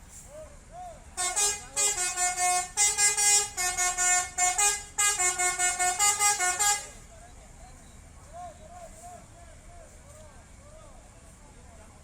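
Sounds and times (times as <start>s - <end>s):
multi-trumpet air horn tune: 1.2s - 7.0s.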